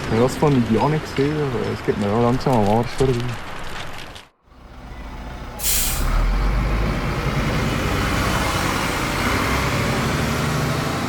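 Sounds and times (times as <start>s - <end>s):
bus engine rumbling: 4.5s - 11.0s
short sharp hiss: 5.6s - 6.2s.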